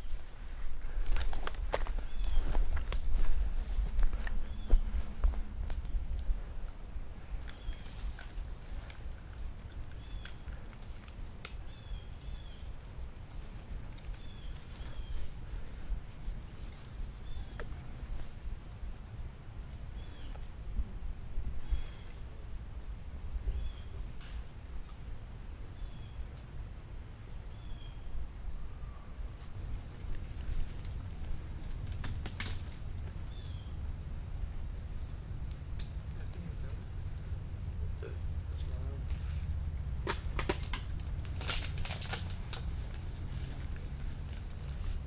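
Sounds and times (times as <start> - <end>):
low rumble on microphone: 0.0 - 10.2
insect trill: 0.0 - 45.0.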